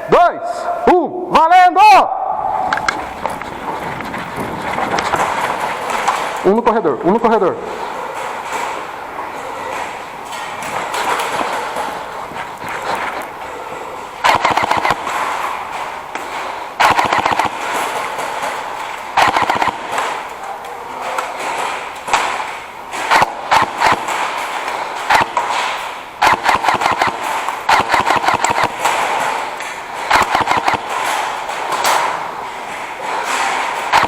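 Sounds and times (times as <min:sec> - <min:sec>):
airsoft guns firing bursts: 0:14.2 - 0:20.4, 0:21.0 - 0:34.0.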